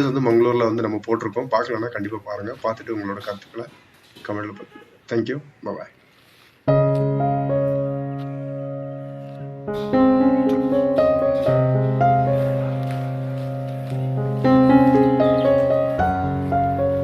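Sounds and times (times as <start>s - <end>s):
piano background music: 6.7s - 17.0s.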